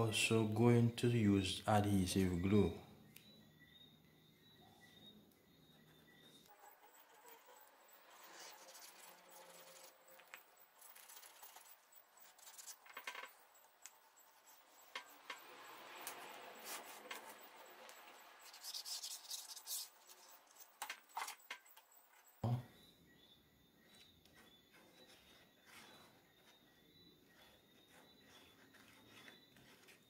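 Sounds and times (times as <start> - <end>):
small tools clicking and tapping: 9.7 - 18.1, 20.4 - 22.4.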